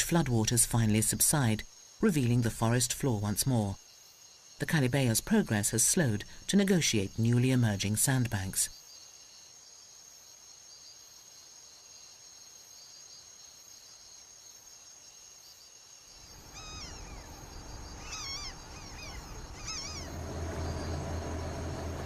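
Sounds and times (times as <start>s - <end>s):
high insect drone: 8.2s - 22.0s
bird giving wavering calls: 16.2s - 21.7s
low rumble: 16.3s - 22.0s.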